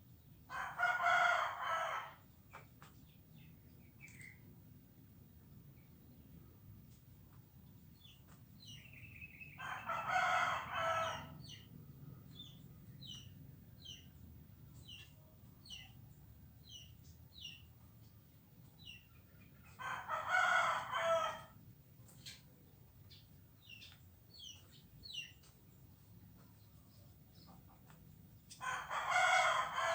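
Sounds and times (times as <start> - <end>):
rooster crowing: 0.5 - 2.2, 9.6 - 11.3, 19.8 - 21.5, 28.6 - 29.9.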